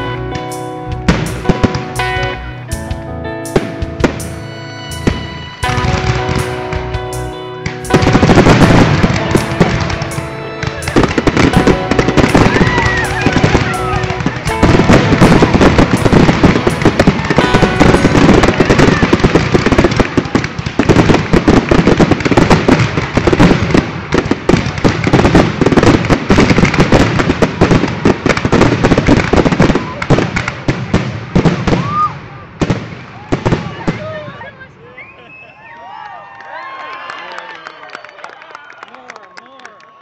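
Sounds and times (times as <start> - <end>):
recorded music: 0.0 - 21.1
fireworks bangs and crackles: 0.0 - 34.9.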